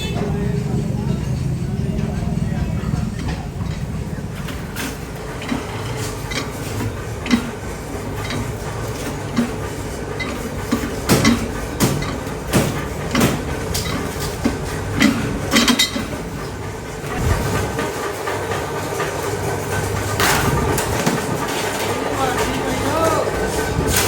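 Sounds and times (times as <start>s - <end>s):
low hum of workshop machinery: 0.0s - 24.0s.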